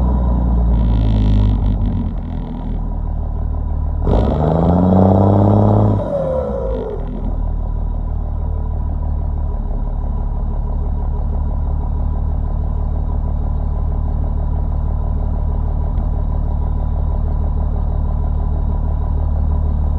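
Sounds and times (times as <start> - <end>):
diesel engine idling: 0.0 - 19.9
turbocharger whistle: 4.1 - 7.3.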